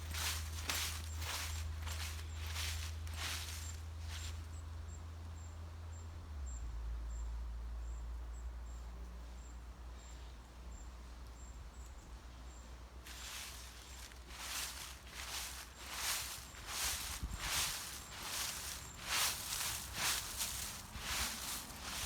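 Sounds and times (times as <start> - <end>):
footsteps in dry leaves: 0.0 - 4.4, 13.0 - 22.0
wind rumbling on microphone: 15.2 - 22.0.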